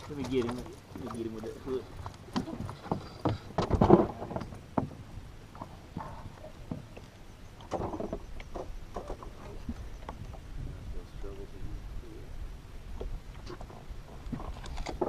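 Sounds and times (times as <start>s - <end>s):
knocks on a boat: 2.4s - 5.0s.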